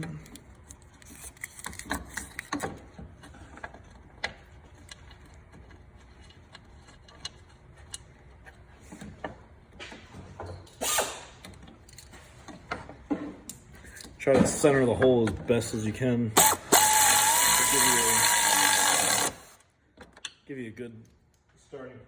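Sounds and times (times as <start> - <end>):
ratchet wrench clicking: 16.4 - 19.6.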